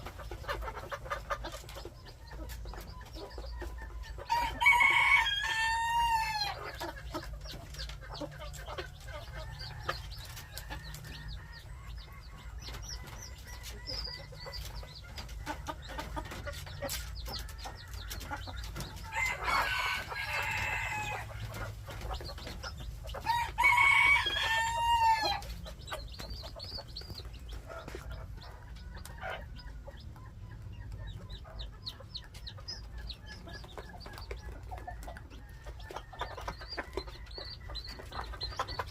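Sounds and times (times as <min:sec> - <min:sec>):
chickens clucking: 0:00.0 - 0:38.9
rooster crowing: 0:04.3 - 0:06.6, 0:19.1 - 0:21.4, 0:23.3 - 0:25.5.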